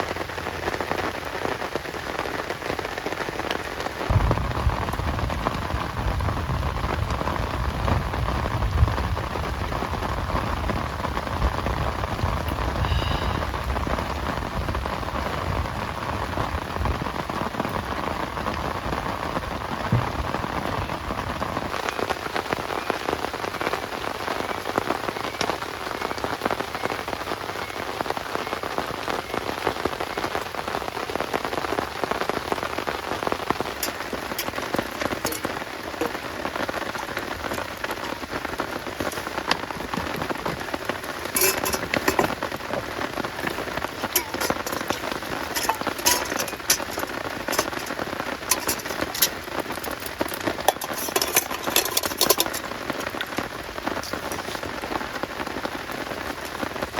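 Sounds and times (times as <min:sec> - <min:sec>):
heavy rain falling: 0:00.0 - 0:56.9
deep low rumble: 0:04.1 - 0:09.2.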